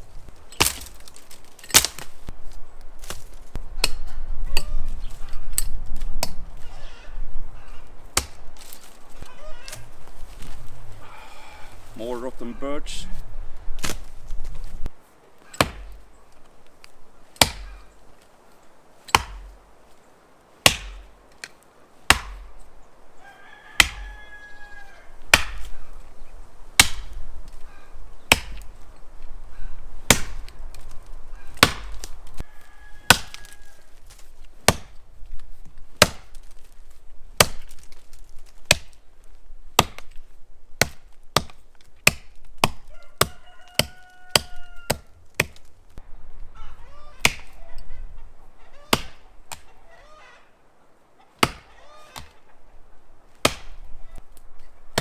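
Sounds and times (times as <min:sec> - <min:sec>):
axe chopping wood: 0:00.6 - 0:02.3, 0:03.0 - 0:04.7, 0:05.5 - 0:06.4, 0:08.1 - 0:09.0, 0:13.8 - 0:14.1, 0:15.5 - 0:16.1, 0:17.4 - 0:17.9, 0:19.0 - 0:19.7, 0:20.6 - 0:22.6, 0:23.8 - 0:24.2, 0:25.3 - 0:25.8, 0:26.8 - 0:27.6, 0:28.3 - 0:28.8, 0:30.0 - 0:30.9, 0:31.5 - 0:32.2, 0:33.0 - 0:36.7, 0:37.4 - 0:39.0, 0:39.7 - 0:45.8, 0:47.2 - 0:47.6, 0:48.9 - 0:49.7, 0:51.4 - 0:52.4, 0:53.3 - 0:55.0
bird calling: 0:09.1 - 0:10.0, 0:46.4 - 0:53.1.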